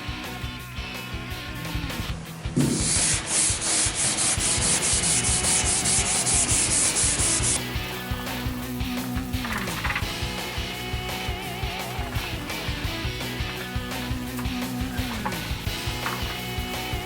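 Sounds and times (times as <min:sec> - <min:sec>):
sandpaper rubbing on metal panel: 0:02.7 - 0:10.1, 0:11.4 - 0:17.0.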